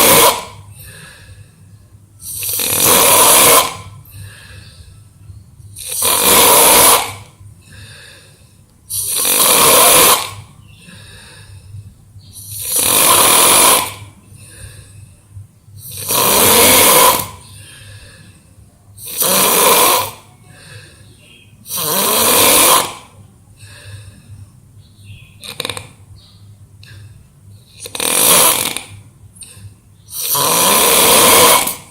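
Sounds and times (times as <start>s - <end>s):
person snoring: 0.0s - 1.3s, 2.2s - 4.8s, 5.8s - 8.2s, 8.9s - 11.5s, 12.4s - 14.8s, 15.8s - 18.4s, 19.0s - 20.9s, 21.7s - 24.2s, 27.7s - 31.9s
quiet breaths: 0.0s - 31.9s.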